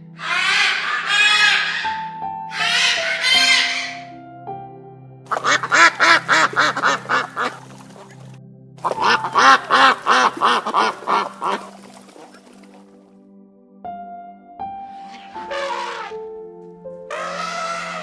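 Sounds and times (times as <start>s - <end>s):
soft background music: 0.0s - 18.0s
duck quacking: 0.2s - 2.0s, 2.6s - 4.0s, 5.3s - 7.6s, 8.8s - 11.7s, 15.4s - 16.1s, 17.1s - 18.0s.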